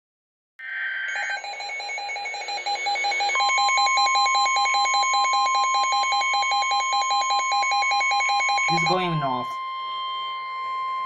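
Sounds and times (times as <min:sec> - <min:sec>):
alert alarm beeping rapidly: 0:01.2 - 0:09.6
steady warning tone: 0:06.4 - 0:11.0.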